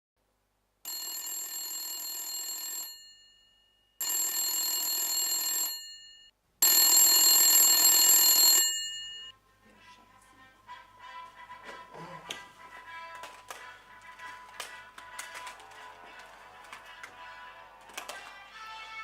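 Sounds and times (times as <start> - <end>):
telephone bell ringing: 0.9 - 9.3.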